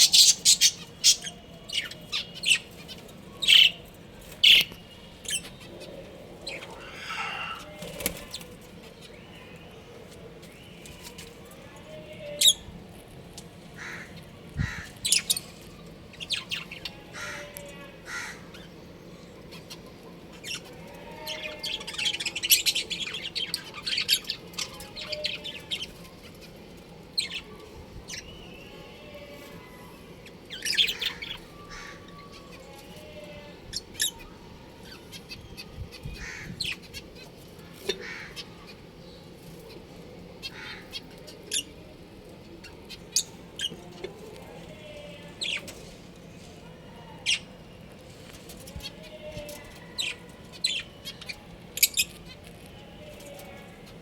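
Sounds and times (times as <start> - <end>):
budgerigars chirping and chattering: 0.0 - 3.8, 4.4 - 8.4.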